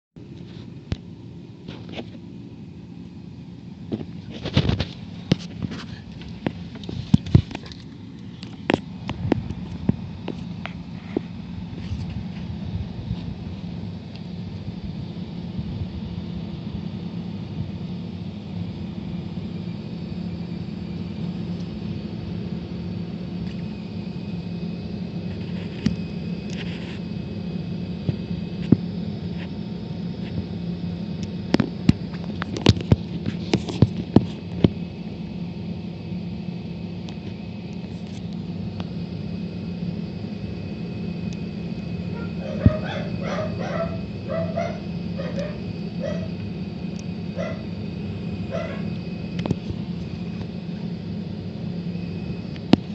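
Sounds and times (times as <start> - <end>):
power supply high-pitched squeal: 37.4 - 52.9
dog barking: 42.2 - 46.3, 47.4 - 47.7, 48.5 - 48.9.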